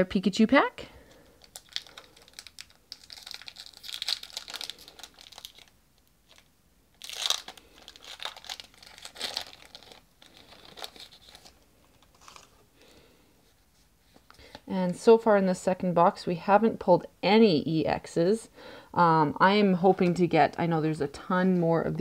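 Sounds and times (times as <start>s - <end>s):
foil wrapper crinkling and tearing: 1.0s - 12.6s.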